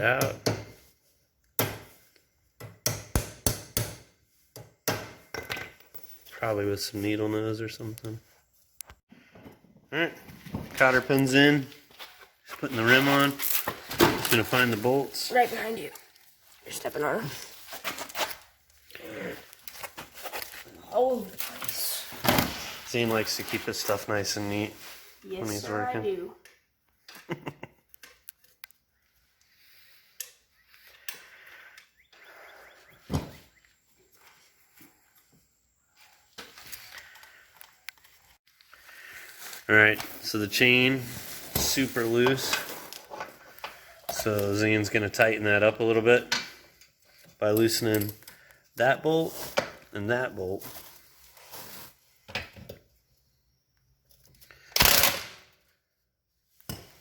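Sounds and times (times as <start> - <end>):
metal parts and tools clinking: 5.3 - 6.4.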